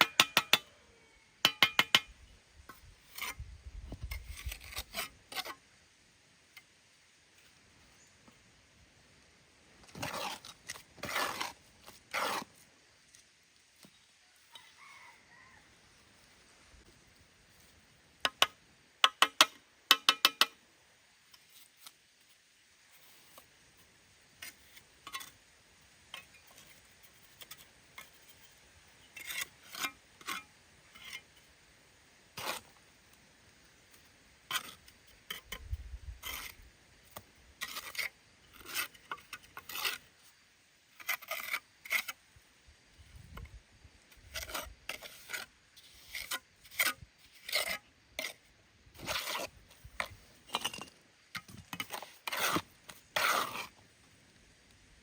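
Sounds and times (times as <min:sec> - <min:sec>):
rasping scraping on hard surface: 0:09.9 - 0:12.6, 0:36.2 - 0:40.2, 0:41.0 - 0:42.2, 0:44.1 - 0:53.8.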